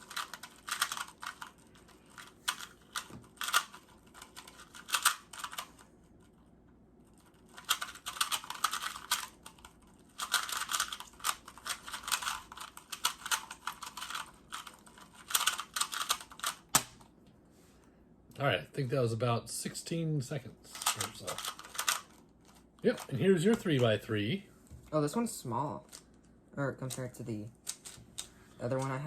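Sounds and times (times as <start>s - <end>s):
plastic puzzle cube clicking: 0.0s - 5.7s, 7.3s - 17.0s, 20.7s - 22.2s.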